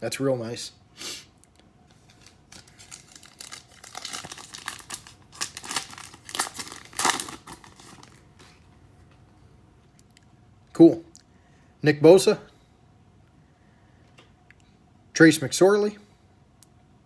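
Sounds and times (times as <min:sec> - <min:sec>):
foil wrapper crinkling and tearing: 0:01.9 - 0:08.6.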